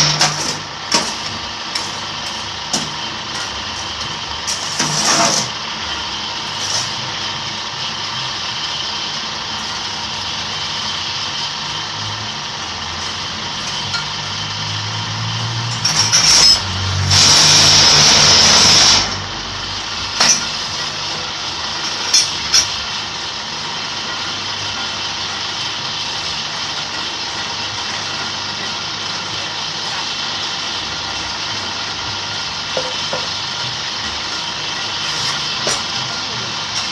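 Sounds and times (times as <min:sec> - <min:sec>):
loud noisy burst: 0:15.9 - 0:20.0.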